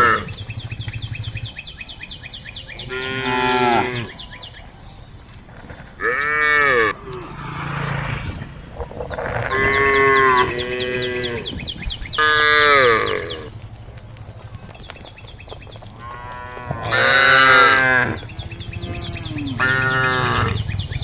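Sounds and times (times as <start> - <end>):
cows mooing: 0.0 - 1.5, 2.8 - 4.2, 5.8 - 11.6, 12.2 - 13.5, 16.0 - 20.7.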